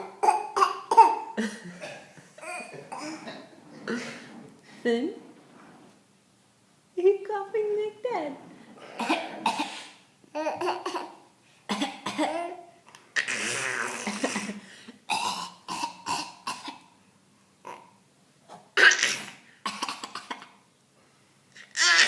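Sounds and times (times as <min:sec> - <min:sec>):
small boy coughing: 0:00.0 - 0:04.0, 0:08.9 - 0:12.6, 0:13.2 - 0:16.9, 0:18.8 - 0:20.6.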